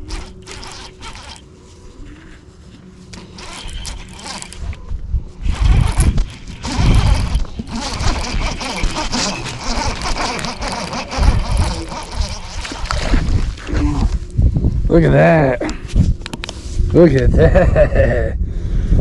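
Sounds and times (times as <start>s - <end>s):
fishing reel whirring rattle: 0.0s - 2.4s, 3.1s - 13.7s
wind buffeting microphone: 3.3s - 19.0s.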